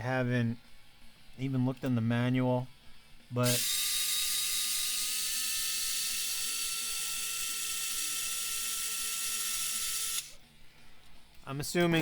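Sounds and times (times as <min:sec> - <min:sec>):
electric screwdriver whirring: 0:03.4 - 0:10.4.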